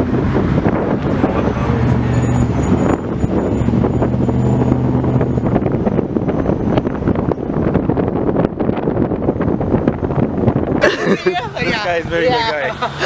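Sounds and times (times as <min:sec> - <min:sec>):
car engine humming: 0:00.0 - 0:13.0
road and wind noise: 0:00.0 - 0:13.0.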